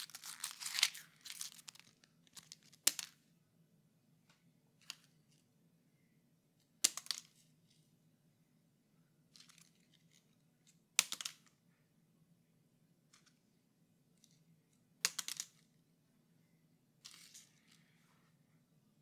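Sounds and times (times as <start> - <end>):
paper crackling: 0.0 - 2.8
paper rustling: 0.0 - 2.8.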